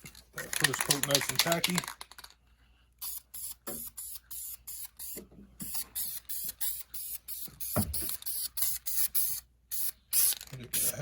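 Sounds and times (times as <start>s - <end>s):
paint sprayer hissing bursts: 3.0s - 11.0s.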